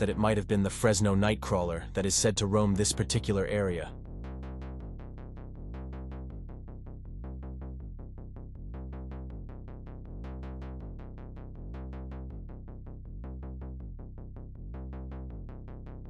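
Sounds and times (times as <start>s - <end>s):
electronic music beat: 0.0s - 6.5s
low synth bass: 0.0s - 16.0s.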